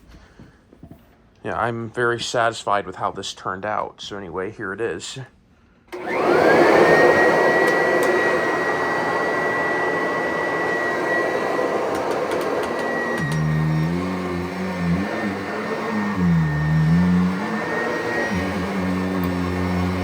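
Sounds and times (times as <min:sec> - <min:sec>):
vacuum cleaner motor whine: 0:05.9 - 0:20.0.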